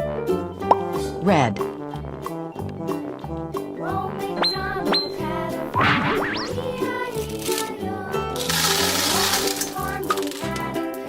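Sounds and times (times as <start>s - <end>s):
cheerful children's music: 0.0s - 11.0s
rising cartoon whistles: 4.3s - 6.8s.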